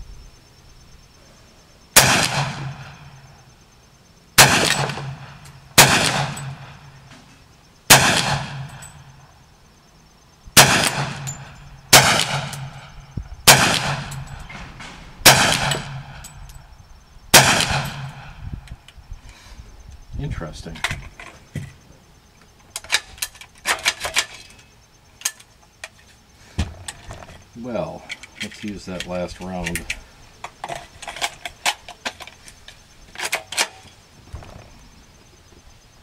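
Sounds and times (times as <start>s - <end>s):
gunshots with ringing echo: 1.9s - 3.4s, 4.4s - 7.1s, 7.9s - 9.3s, 10.5s - 16.6s, 17.3s - 18.5s.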